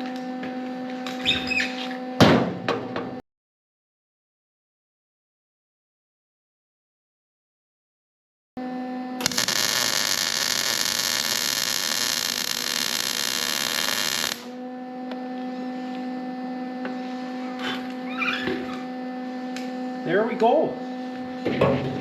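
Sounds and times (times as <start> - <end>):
steady hum: 8.7 - 18.0
welding arc crackling: 9.2 - 14.6.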